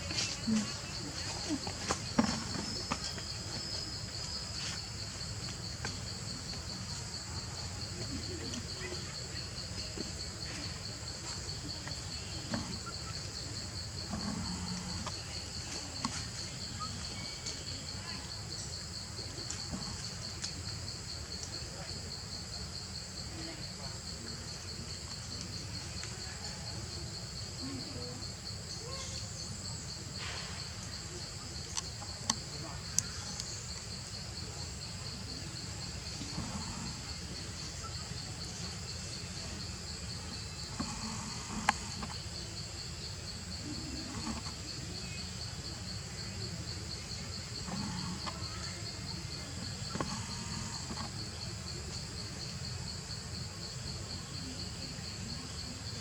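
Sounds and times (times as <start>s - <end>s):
insects trilling: 0.0s - 56.0s.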